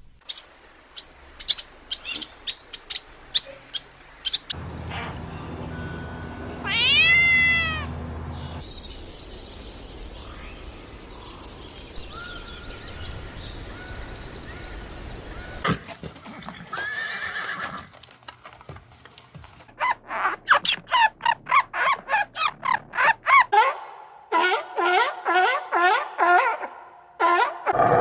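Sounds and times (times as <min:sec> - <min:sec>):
cat chirping: 0:04.6 - 0:08.6
cat meowing: 0:04.6 - 0:08.6
low steady hum: 0:04.6 - 0:08.6.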